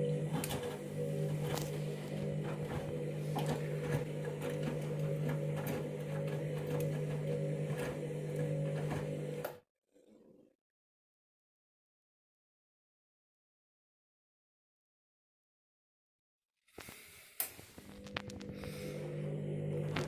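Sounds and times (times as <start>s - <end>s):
washing machine motor humming: 0.0s - 9.6s, 17.8s - 20.0s.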